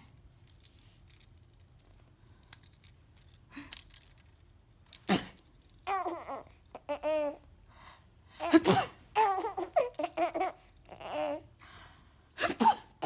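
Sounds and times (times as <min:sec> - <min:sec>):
person sneezing: 0:05.1 - 0:05.4, 0:08.4 - 0:09.0, 0:12.4 - 0:13.0
baby laughing: 0:05.9 - 0:07.4, 0:08.4 - 0:11.4.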